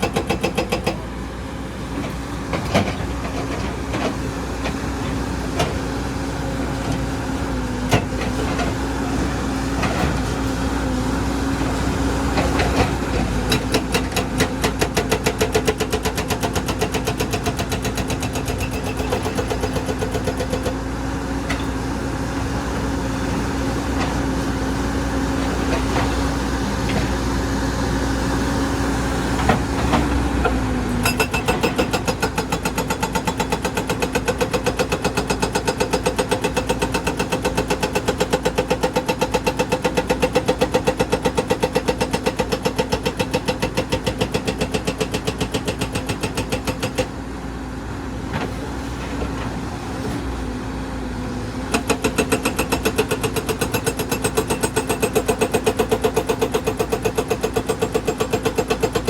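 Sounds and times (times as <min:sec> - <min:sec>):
excavator diesel engine running: 0:00.1 - 0:44.4.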